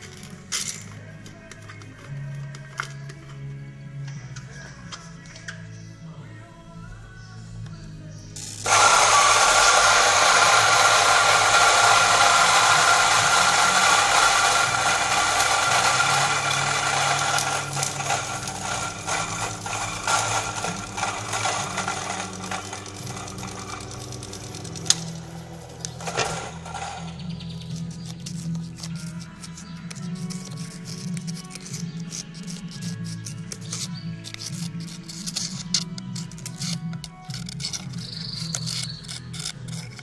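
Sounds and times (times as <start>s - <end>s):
coffee grinder grinding beans: 8.4s - 40.0s.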